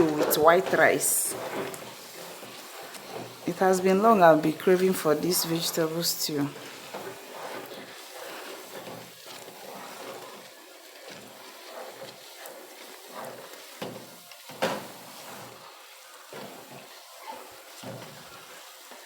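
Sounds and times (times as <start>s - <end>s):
utensils scraping and clicking: 0.0s - 15.6s
food sizzling in a pot: 0.0s - 19.0s.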